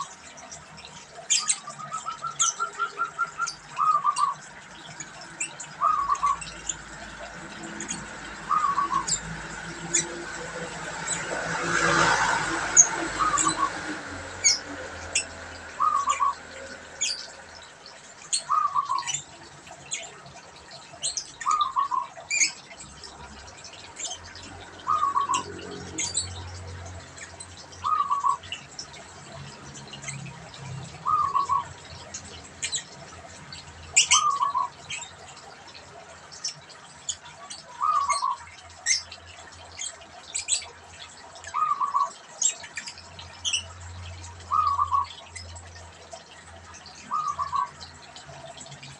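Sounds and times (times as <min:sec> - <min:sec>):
small birds chirping: 0:00.0 - 0:48.9
dove cooing: 0:31.0 - 0:31.7.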